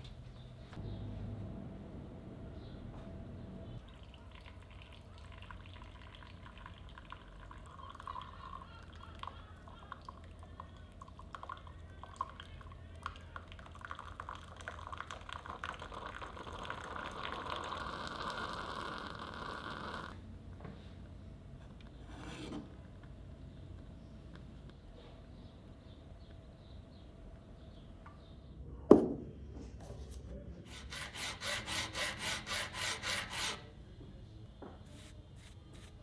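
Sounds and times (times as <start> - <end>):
liquid pouring and dripping: 3.8 - 19.2.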